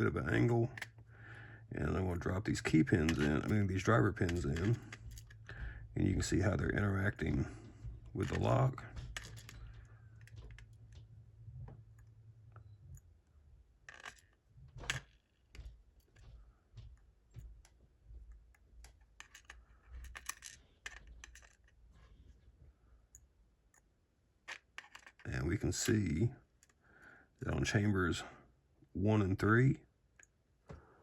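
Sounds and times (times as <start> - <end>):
metal pins clicking into lock: 2.9 - 5.6.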